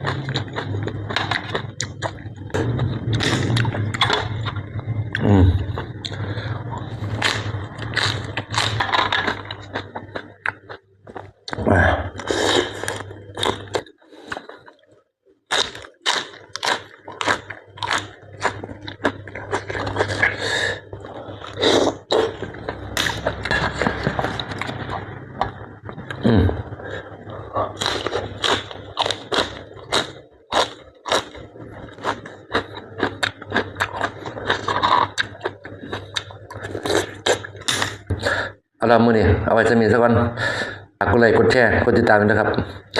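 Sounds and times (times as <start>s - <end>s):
person chewing cockles: 0.0s - 14.9s, 15.5s - 38.3s.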